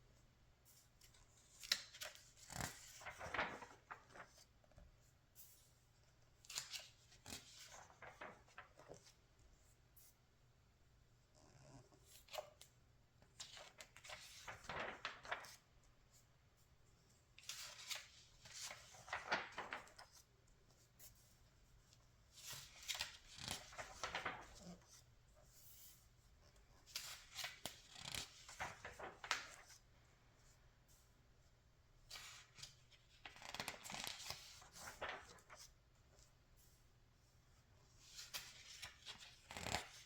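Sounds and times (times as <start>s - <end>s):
magazine pages rustling: 0.7s - 4.5s, 6.4s - 9.2s, 13.4s - 15.7s, 17.4s - 20.3s, 22.3s - 25.8s, 26.8s - 30.1s, 32.0s - 36.8s, 38.0s - 40.0s.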